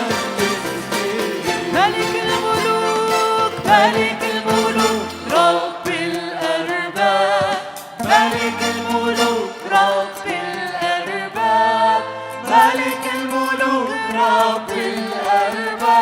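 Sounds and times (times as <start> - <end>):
light percussion: 0.0 - 6.8, 7.4 - 11.0
church worship music: 0.0 - 16.0.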